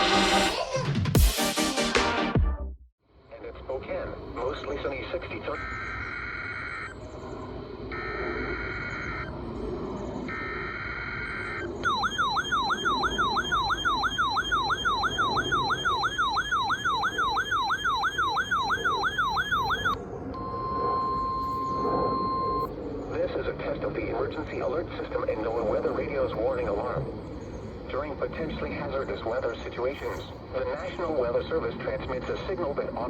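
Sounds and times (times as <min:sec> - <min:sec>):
sweeping alarm tone: 0:05.6 - 0:07.0, 0:07.8 - 0:09.4, 0:10.2 - 0:22.7
steady attention tone: 0:10.3 - 0:22.7.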